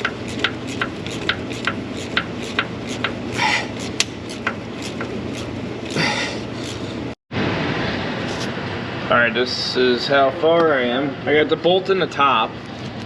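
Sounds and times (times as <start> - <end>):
hand ratchet clicking: 0.0 - 6.8.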